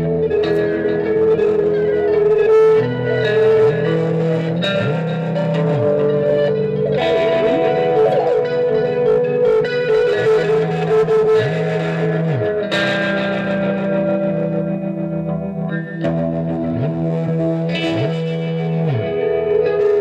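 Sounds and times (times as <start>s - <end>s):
guitar through effects: 0.0s - 20.0s.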